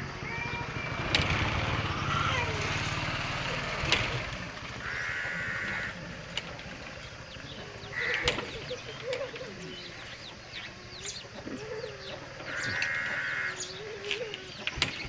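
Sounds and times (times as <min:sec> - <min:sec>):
motorcycle engine rumbling: 0:00.0 - 0:15.0.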